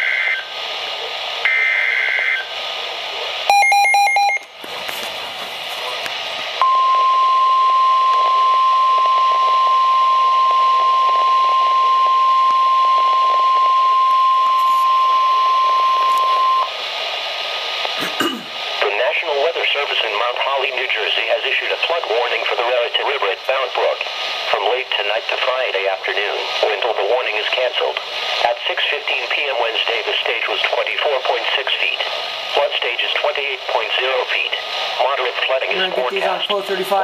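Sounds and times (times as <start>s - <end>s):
steady warning alarm tone: 3.5s - 4.5s, 6.6s - 16.7s.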